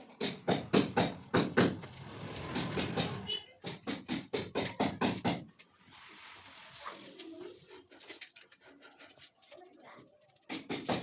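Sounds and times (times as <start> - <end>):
rapid hammer strikes: 0.0 - 5.5, 10.5 - 11.0
rough scraping noise: 1.8 - 3.3, 5.6 - 9.6.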